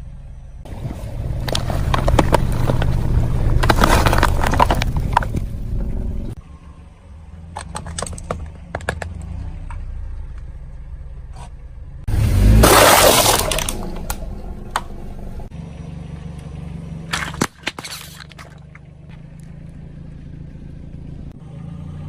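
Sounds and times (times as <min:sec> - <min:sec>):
car engine rumbling: 0:00.0 - 0:22.0
tyres crushing brittle objects: 0:01.5 - 0:05.5, 0:12.4 - 0:14.2, 0:17.1 - 0:18.8.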